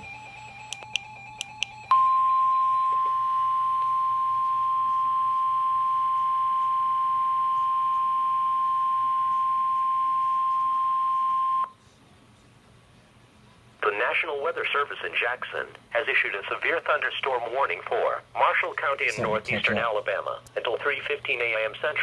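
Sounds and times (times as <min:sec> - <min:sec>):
steady high alarm beep: 0:00.0 - 0:11.7.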